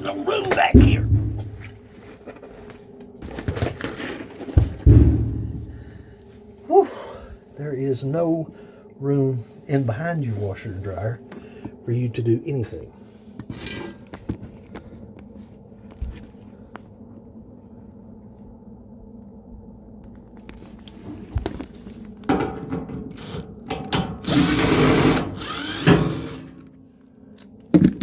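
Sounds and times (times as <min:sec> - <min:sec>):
low steady hum: 0:00.0 - 0:28.0
knocks and clatter of parts: 0:03.2 - 0:06.0, 0:21.0 - 0:26.8, 0:27.4 - 0:28.0
power drill running: 0:24.2 - 0:26.6.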